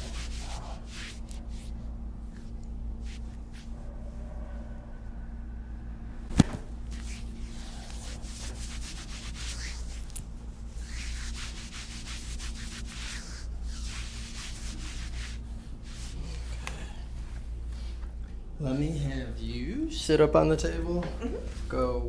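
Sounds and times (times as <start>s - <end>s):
hands rubbing over clothing: 0.0s - 3.9s, 6.3s - 18.1s.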